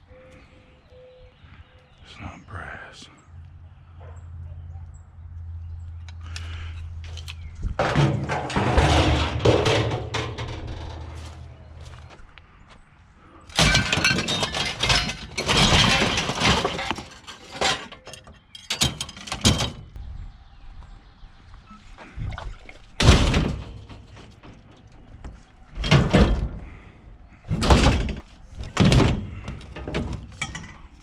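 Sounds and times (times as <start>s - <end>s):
metal clanks: 7.1s - 12.0s, 13.5s - 19.9s, 23.0s - 26.8s, 27.5s - 31.0s
scrap metal clattering: 7.1s - 12.0s, 13.5s - 19.8s, 23.0s - 31.0s.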